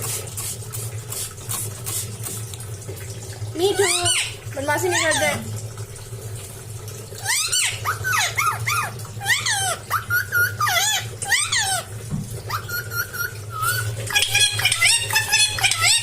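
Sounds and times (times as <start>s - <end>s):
parrot squawking: 3.6s - 5.5s, 7.2s - 11.9s, 12.5s - 16.0s.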